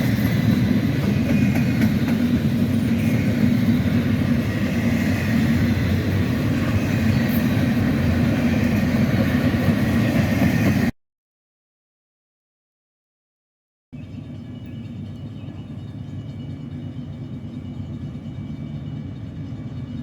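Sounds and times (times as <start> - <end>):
freight train rumbling on rails: 0.0 - 10.9, 14.0 - 20.0.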